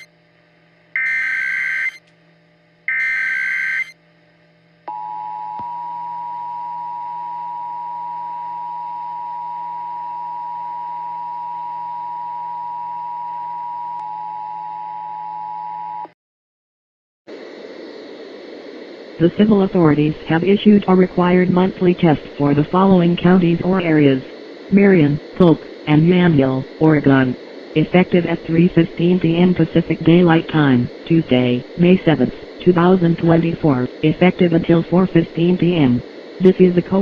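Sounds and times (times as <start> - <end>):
harsh digital data screech: 1.0 - 2.0, 2.9 - 4.0
two-tone attention signal: 1.0 - 2.0, 2.9 - 4.0.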